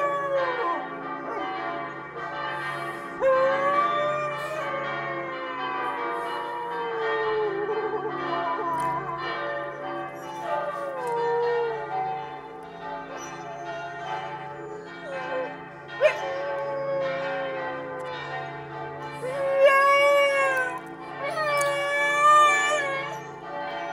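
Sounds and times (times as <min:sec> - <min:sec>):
dog howling: 0:00.0 - 0:01.6, 0:03.2 - 0:04.8, 0:06.3 - 0:11.9, 0:13.2 - 0:18.1, 0:19.2 - 0:23.4
church bells ringing: 0:00.0 - 0:23.9.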